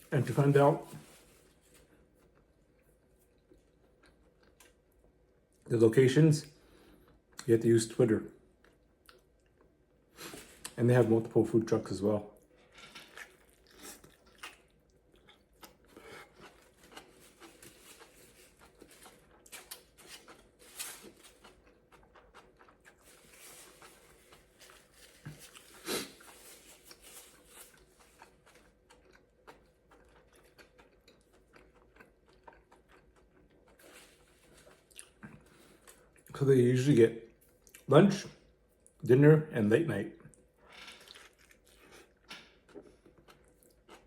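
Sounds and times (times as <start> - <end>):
mouth chewing food: 1.8 - 5.7, 12.4 - 36.3, 40.2 - 44.0.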